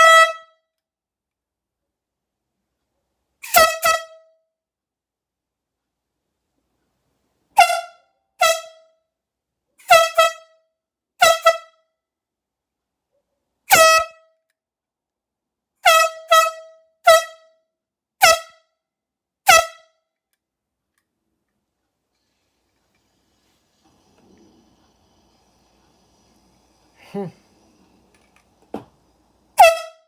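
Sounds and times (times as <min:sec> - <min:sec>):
air horn blasts: 0:00.0 - 0:00.6, 0:03.5 - 0:04.2, 0:07.6 - 0:08.9, 0:09.9 - 0:10.6, 0:11.2 - 0:11.8, 0:15.8 - 0:17.4, 0:18.2 - 0:18.6, 0:19.5 - 0:19.9, 0:29.5 - 0:30.0.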